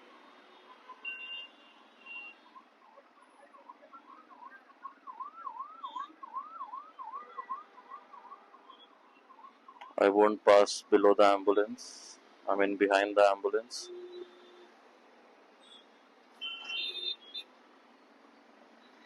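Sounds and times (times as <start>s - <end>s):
low traffic hum: 0.0s - 19.0s
ambulance siren yelping: 2.0s - 10.1s.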